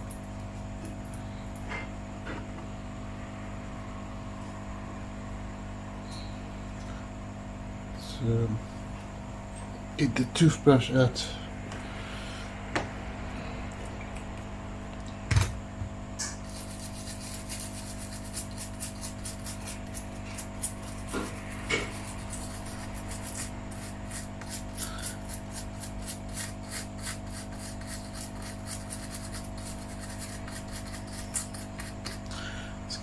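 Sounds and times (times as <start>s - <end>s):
toothbrush scrubbing circuit board: 16.4s - 32.3s.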